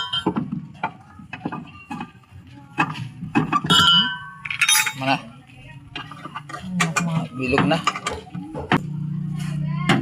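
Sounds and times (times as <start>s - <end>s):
metal tools clinking and knocking: 3.4s - 5.2s, 6.0s - 8.3s.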